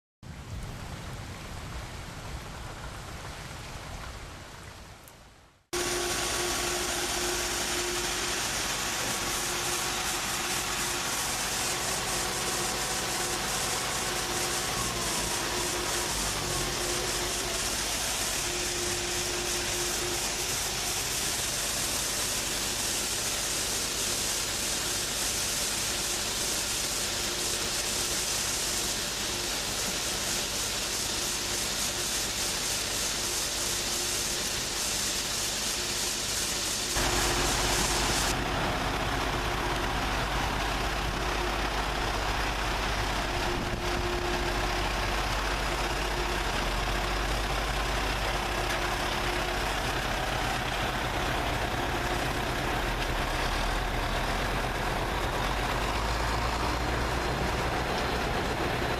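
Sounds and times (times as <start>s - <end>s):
combine harvester running: 5.7s - 58.9s.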